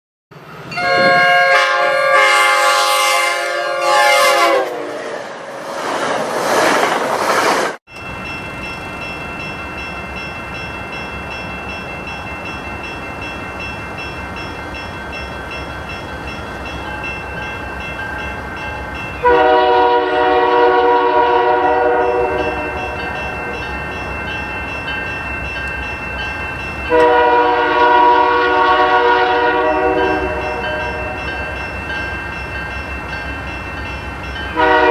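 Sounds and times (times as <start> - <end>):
passing train rumble: 0.3 - 34.9
locomotive air horn blasts: 0.7 - 5.0, 19.2 - 23.0, 26.9 - 31.2, 34.5 - 34.9.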